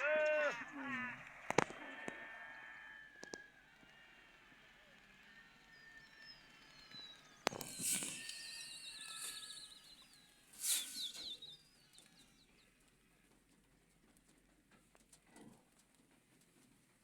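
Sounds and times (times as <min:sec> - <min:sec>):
small birds chirping: 0:00.0 - 0:14.6
sharp click: 0:07.4 - 0:09.9.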